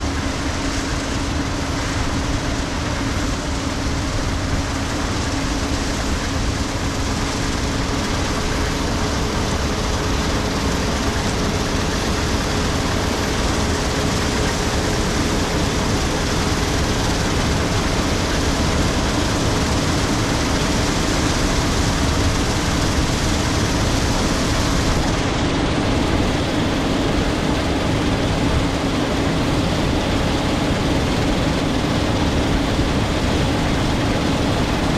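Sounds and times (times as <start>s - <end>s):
combine harvester running: 0.0s - 34.9s.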